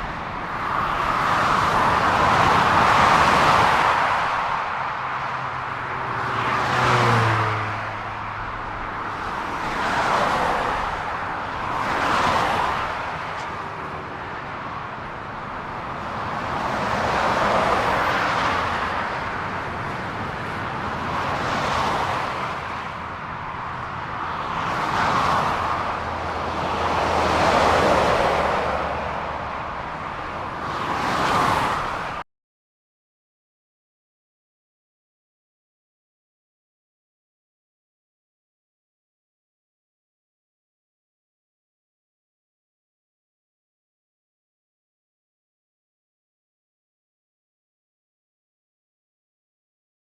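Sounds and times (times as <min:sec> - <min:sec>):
cars passing: 0:00.0 - 0:32.2.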